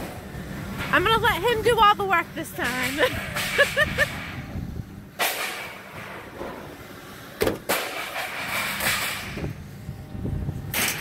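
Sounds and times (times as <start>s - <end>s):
scrap metal clattering: 7.6s - 9.5s.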